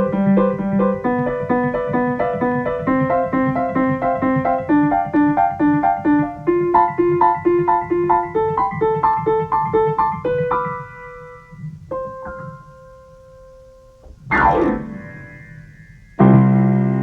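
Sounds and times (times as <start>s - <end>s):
digital piano improvising: 0.0s - 17.0s.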